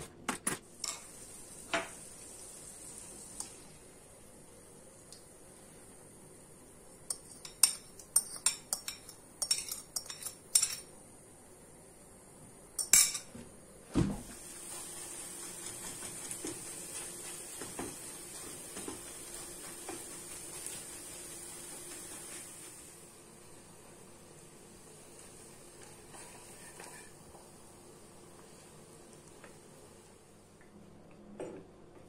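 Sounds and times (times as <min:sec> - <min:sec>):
steady hiss: 0:00.6 - 0:30.6
dishes and cutlery clinking: 0:07.1 - 0:10.9.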